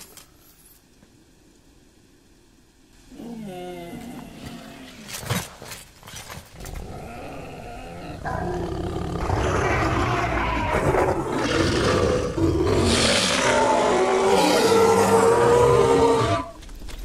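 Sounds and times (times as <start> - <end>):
creature roaring and growling: 6.6 - 16.6.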